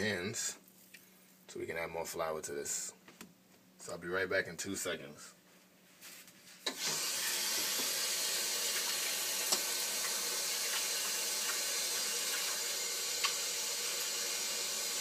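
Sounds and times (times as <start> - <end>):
water tap running into sink: 6.7 - 15.0.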